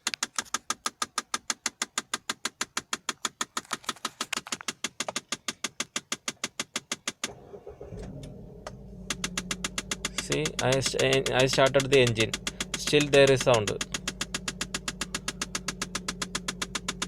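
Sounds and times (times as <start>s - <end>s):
rapid clicking behind dashboard: 0.0s - 17.0s
car engine idling: 7.3s - 17.0s.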